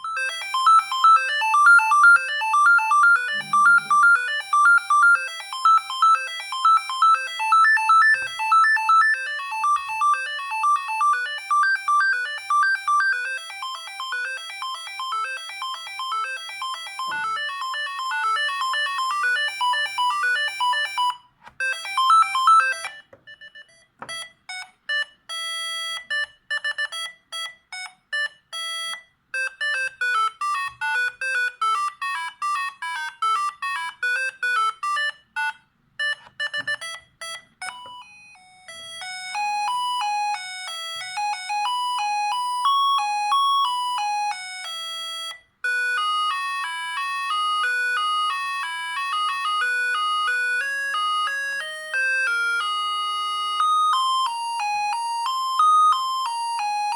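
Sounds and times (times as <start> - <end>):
mobile phone ringtone melody: 0.0 - 56.9
held chord-like tone: 3.2 - 4.3
sparse electronic beeps: 3.3 - 4.2.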